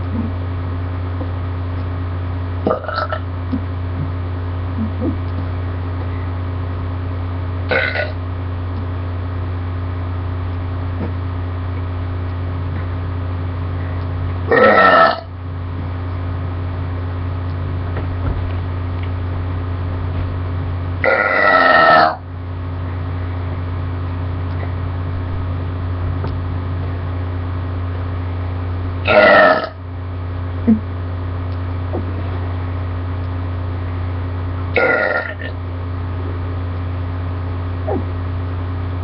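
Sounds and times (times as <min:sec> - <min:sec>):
steady low hum: 0:00.0 - 0:39.0
person burping: 0:02.7 - 0:03.2, 0:07.7 - 0:08.2, 0:14.5 - 0:15.3, 0:21.0 - 0:22.2, 0:29.1 - 0:29.8, 0:34.8 - 0:35.6.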